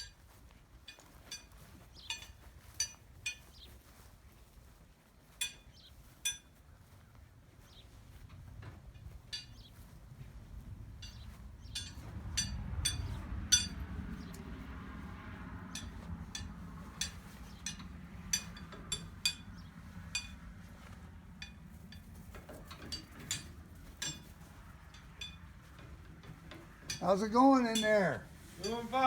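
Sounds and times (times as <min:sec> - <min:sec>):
sharp metallic clinks: 0:00.0 - 0:03.6, 0:05.4 - 0:06.5, 0:11.0 - 0:14.6, 0:15.2 - 0:29.0
low rumble: 0:08.8 - 0:27.0.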